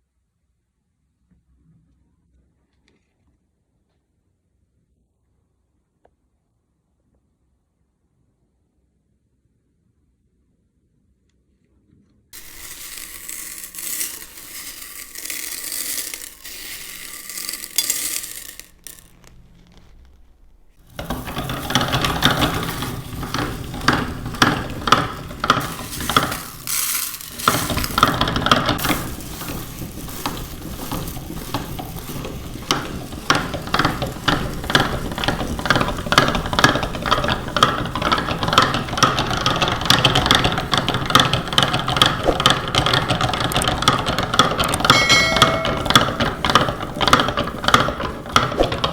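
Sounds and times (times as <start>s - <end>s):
grinder crunching nuts: 12.4s - 48.9s.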